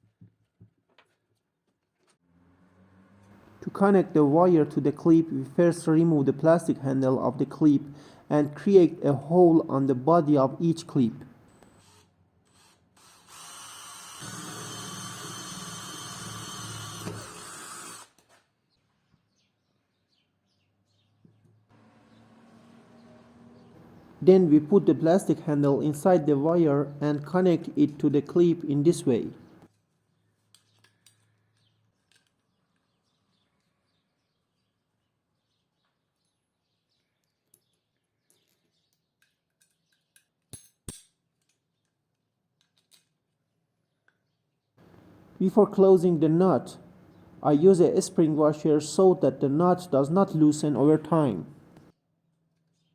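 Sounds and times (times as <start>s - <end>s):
electric drill running: 11.7s - 18.2s
small metal clicks and clinks: 30.5s - 32.9s, 37.2s - 42.0s.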